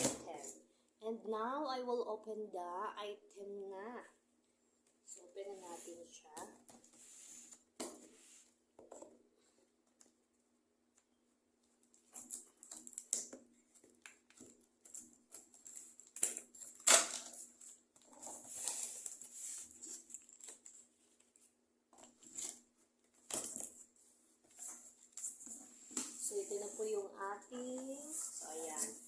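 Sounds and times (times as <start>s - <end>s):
cardboard packaging rustling: 11.8s - 26.3s.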